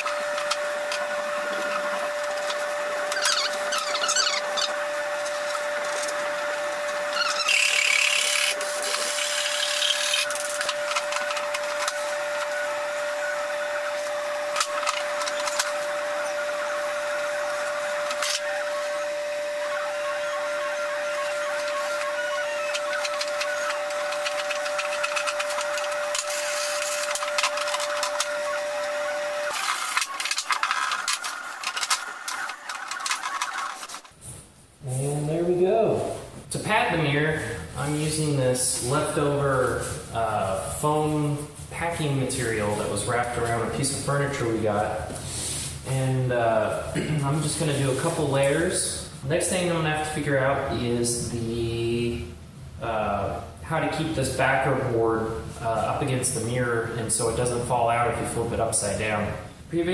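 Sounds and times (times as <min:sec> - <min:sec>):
small electric motor running: 0:00.0 - 0:34.1.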